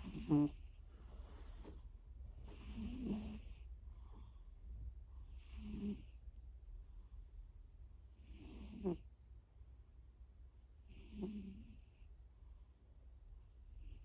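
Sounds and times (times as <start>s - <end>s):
cat snoring: 0.0s - 0.7s, 2.4s - 4.4s, 5.2s - 6.2s, 8.2s - 9.0s, 10.8s - 12.0s, 13.8s - 14.0s.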